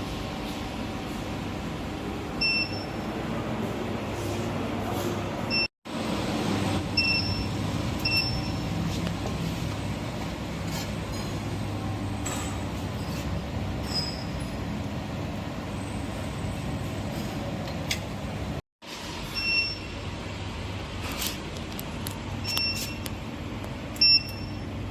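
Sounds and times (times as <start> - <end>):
low machine hum: 0.0 - 18.6.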